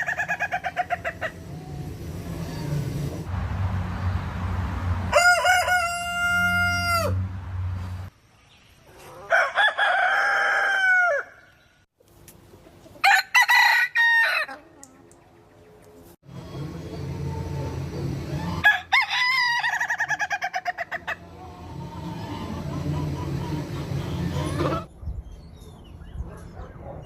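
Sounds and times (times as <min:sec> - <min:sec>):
rooster crowing: 0:05.1 - 0:07.2, 0:09.3 - 0:11.4, 0:13.0 - 0:14.6, 0:18.5 - 0:20.7.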